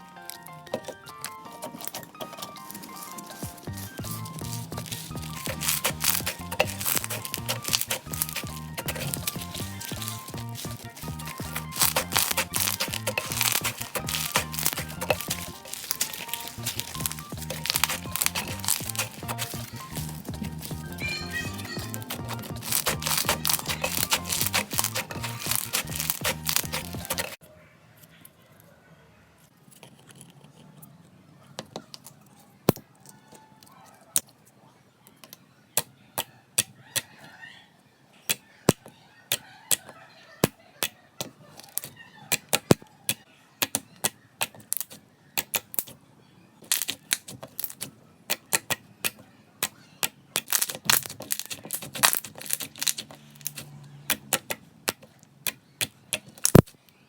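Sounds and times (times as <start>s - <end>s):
slime clicking and popping: 2.8s - 27.4s, 50.0s - 56.7s.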